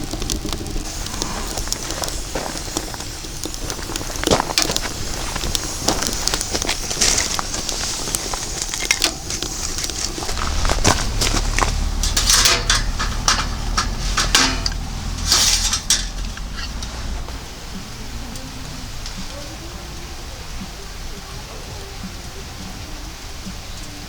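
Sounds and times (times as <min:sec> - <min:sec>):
crackling hiss: 0:00.0 - 0:24.0
low hum: 0:00.6 - 0:21.9
dishes and utensils clinking: 0:06.9 - 0:17.3.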